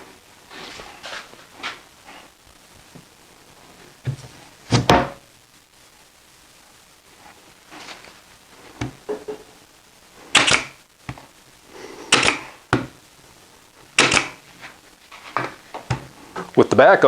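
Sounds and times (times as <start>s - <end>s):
pneumatic nailer firing: 10.3s - 10.8s, 12.1s - 12.6s, 14.0s - 14.4s.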